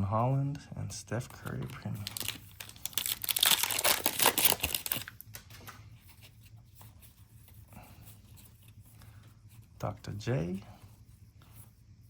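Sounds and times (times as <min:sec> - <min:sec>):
handling of cards: 0:01.2 - 0:10.0
foil wrapper tearing: 0:01.8 - 0:05.5.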